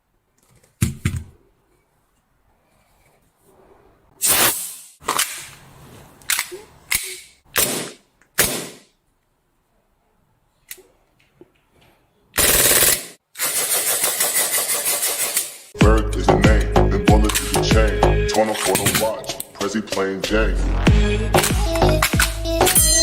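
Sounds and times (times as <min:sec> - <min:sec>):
toy gun shots: 0:06.3 - 0:08.9
toy gun rapid-fire bursts: 0:12.4 - 0:15.7.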